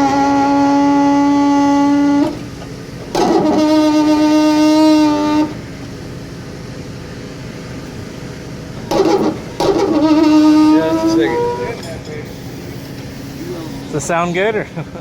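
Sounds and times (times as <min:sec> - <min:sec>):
leveling jacks squealing: 0:03.0 - 0:05.6, 0:08.7 - 0:14.6.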